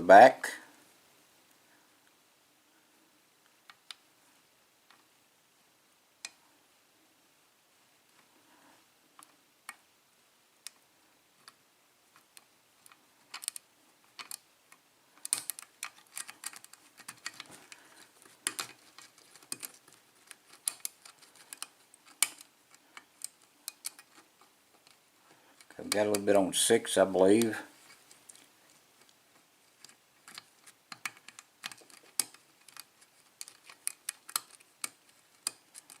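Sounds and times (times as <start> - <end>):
lock pick clicking in lock: 12.8 - 13.6, 15.2 - 17.5, 29.8 - 36.0.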